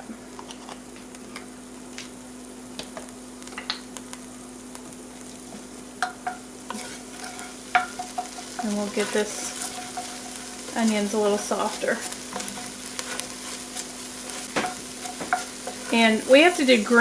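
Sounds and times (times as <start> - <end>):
vegetables sizzling in a pan: 0.0 - 17.0
steady low hum: 4.1 - 17.0
utensil scraping a pan: 6.7 - 17.0.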